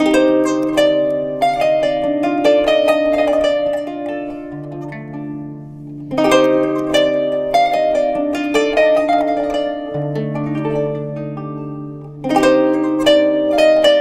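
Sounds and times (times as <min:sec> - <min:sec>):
plucked zither melody: 0:00.0 - 0:14.0.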